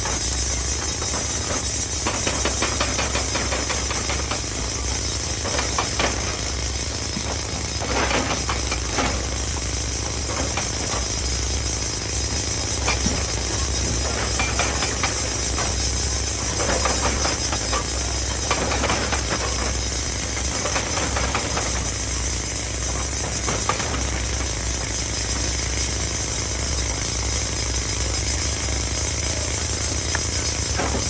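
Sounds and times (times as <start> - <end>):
excavator engine running: 0.0 - 31.0.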